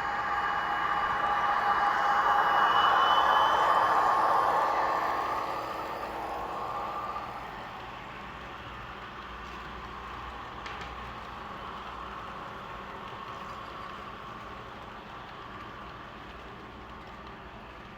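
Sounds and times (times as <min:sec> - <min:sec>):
diesel engine sound: 0:00.0 - 0:07.8
model train wheels rolling on track: 0:00.0 - 0:17.9.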